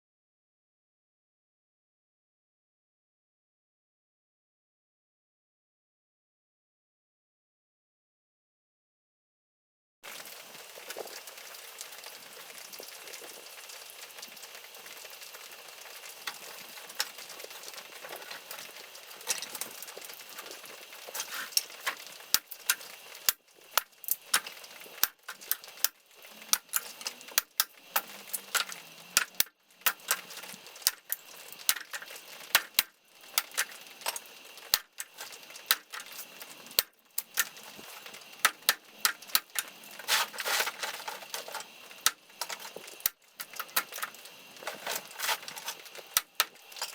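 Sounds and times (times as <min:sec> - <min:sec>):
faint steady hiss: 0:10.1 - 0:46.9.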